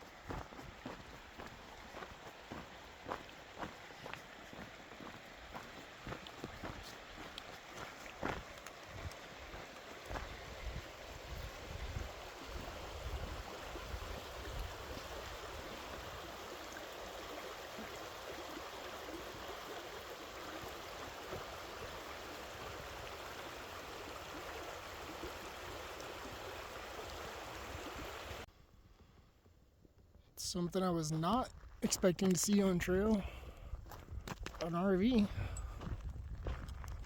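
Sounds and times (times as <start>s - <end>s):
water flowing: 0.0s - 28.5s.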